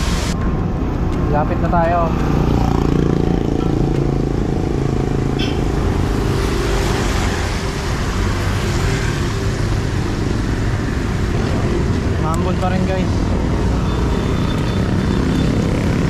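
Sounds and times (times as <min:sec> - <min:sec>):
traffic on wet road: 0:00.0 - 0:16.0.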